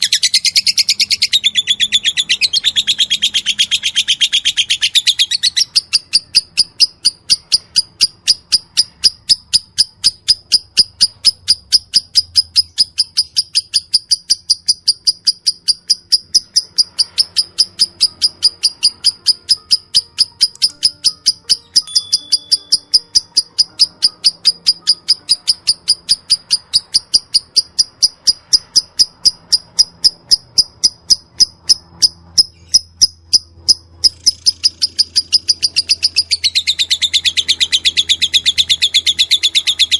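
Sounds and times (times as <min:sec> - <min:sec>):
lovebird chirping: 0:00.0 - 0:39.9.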